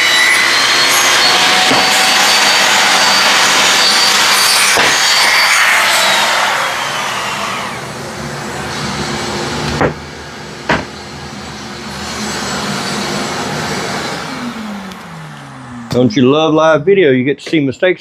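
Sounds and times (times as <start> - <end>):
saw blade spinning down: 0.0 - 8.7
table saw cutting board: 0.0 - 16.2
sharp knocks: 4.7 - 5.1, 9.7 - 10.0, 10.6 - 11.0.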